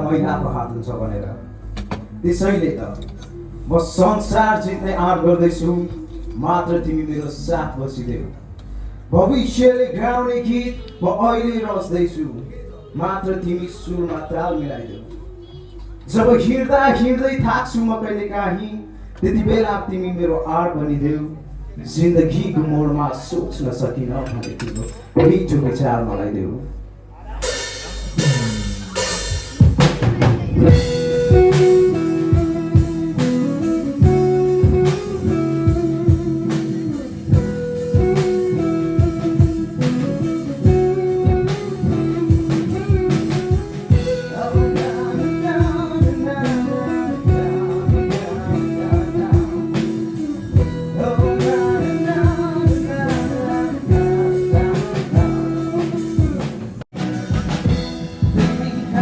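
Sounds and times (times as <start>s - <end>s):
guitar: 0.0s - 20.2s, 23.2s - 59.0s
drum kit playing a steady beat: 1.5s - 4.9s, 26.7s - 59.0s.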